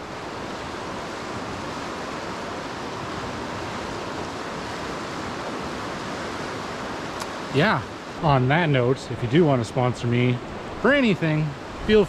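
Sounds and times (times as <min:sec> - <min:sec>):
fast-flowing river rushing: 0:00.0 - 0:12.0.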